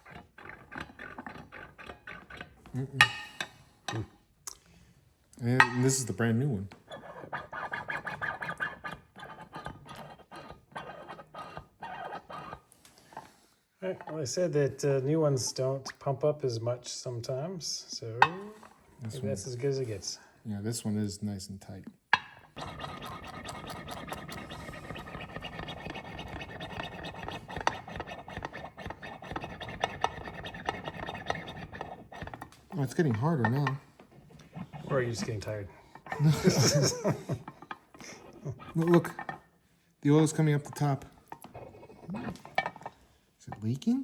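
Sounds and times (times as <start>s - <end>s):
tensioner plunger pumped by hand: 0.0s - 2.8s, 6.9s - 13.2s, 22.6s - 37.0s
scratchy scraping: 0.0s - 3.2s, 5.6s - 13.3s, 22.5s - 39.5s, 40.1s - 43.7s.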